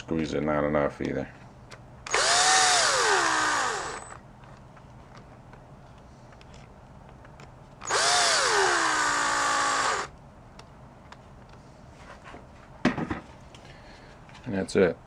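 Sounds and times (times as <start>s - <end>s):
electric screwdriver motor whirring: 2.1s - 4.2s, 7.8s - 10.1s.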